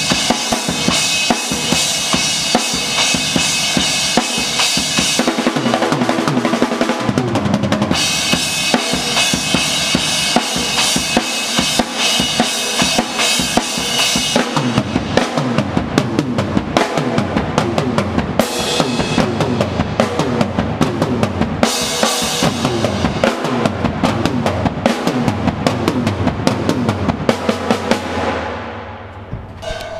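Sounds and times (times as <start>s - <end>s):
drum kit played fast: 0.0s - 29.9s.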